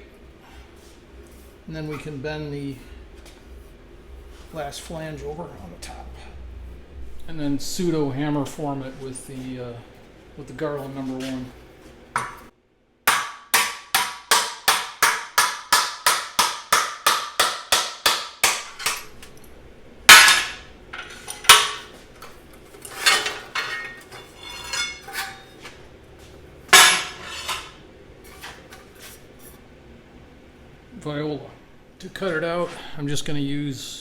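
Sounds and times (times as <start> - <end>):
mallet hammering sheet metal: 13.1 - 19.2, 20.1 - 22.0, 26.7 - 27.8.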